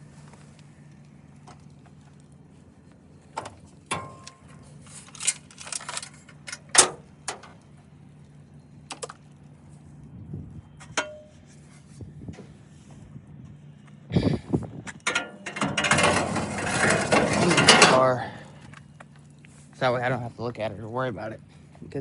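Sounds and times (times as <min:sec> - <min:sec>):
low hum: 0:00.0 - 0:22.0
metal tools clicking and clanking: 0:14.9 - 0:18.3.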